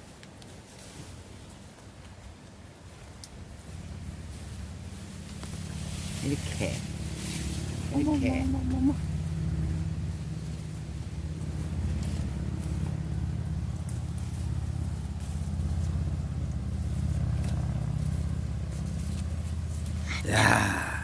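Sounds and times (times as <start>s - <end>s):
low motor hum: 2.5s - 21.0s
faint clicks: 3.2s - 3.4s
woman exclaiming: 20.1s - 21.0s.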